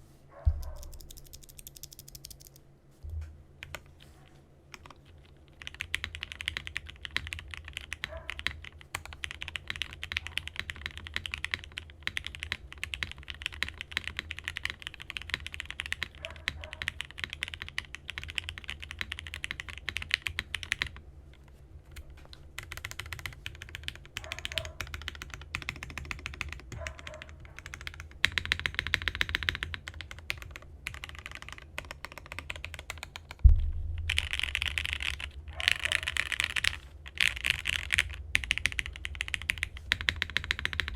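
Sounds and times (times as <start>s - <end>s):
typing on mechanical keyboard: 0.6s - 2.6s, 4.7s - 21.0s, 21.9s - 33.4s, 34.1s - 40.9s.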